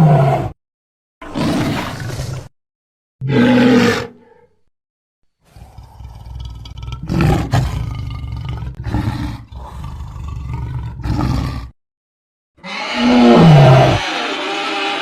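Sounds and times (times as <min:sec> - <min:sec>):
deep rumbling dinosaur roar: 0:03.2 - 0:04.4, 0:05.5 - 0:11.8, 0:12.6 - 0:15.0.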